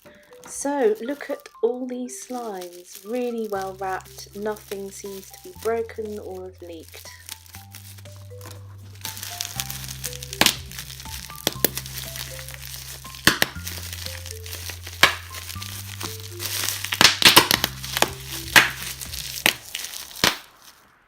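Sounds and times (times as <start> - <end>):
background music: 0.0 - 21.0
bubble wrap crackling: 0.0 - 21.0.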